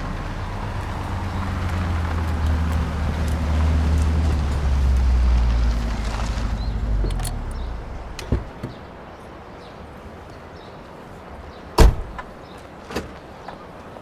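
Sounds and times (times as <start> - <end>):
low engine rumble: 0.0 - 9.0
loud thump: 11.8 - 12.2.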